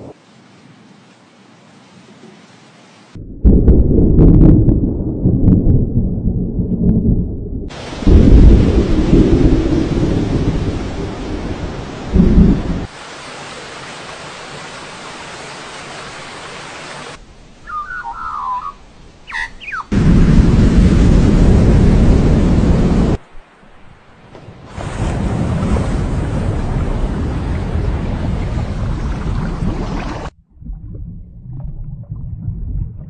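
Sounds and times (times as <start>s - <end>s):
thunder rumbling: 3.2s - 12.9s, 19.9s - 23.2s, 24.4s - 33.0s
heavy rain: 7.7s - 17.7s, 19.9s - 30.3s
wavering chirp: 17.6s - 19.9s.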